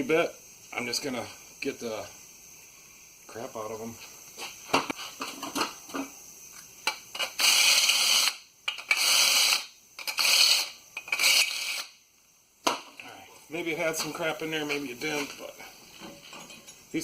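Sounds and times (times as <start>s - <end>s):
drill drilling through metal: 7.4s - 11.9s.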